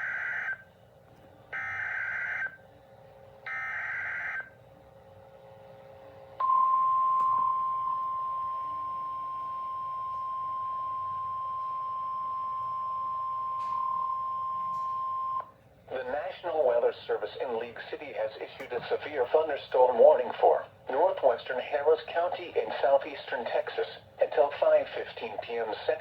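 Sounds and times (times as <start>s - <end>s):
steady warning alarm tone: 0.0s - 0.7s, 1.6s - 2.6s, 3.4s - 4.6s, 6.4s - 15.5s.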